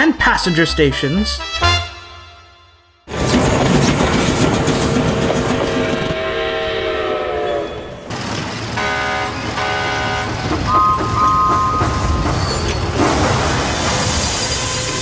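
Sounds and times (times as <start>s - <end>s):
low rumble of trains: 3.1s - 15.0s
train horn blasts: 4.1s - 12.7s
two-note train whistle: 5.6s - 8.1s, 8.7s - 12.6s.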